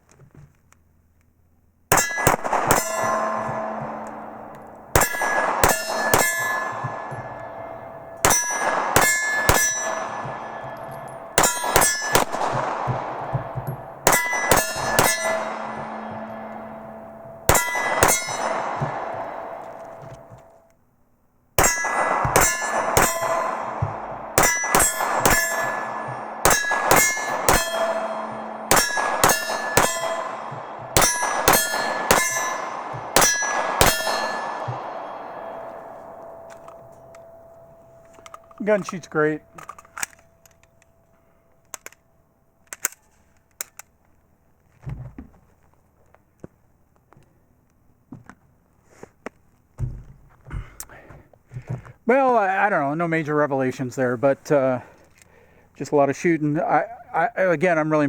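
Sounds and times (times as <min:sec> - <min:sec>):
pistol shots: 0:01.9 - 0:20.5, 0:21.6 - 0:40.2
metallic ringing: 0:01.9 - 0:20.7, 0:21.6 - 0:42.6.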